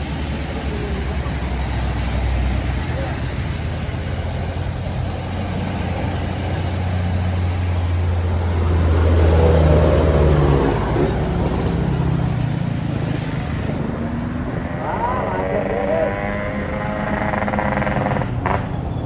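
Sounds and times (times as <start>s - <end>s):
bus engine droning: 0.0s - 19.0s.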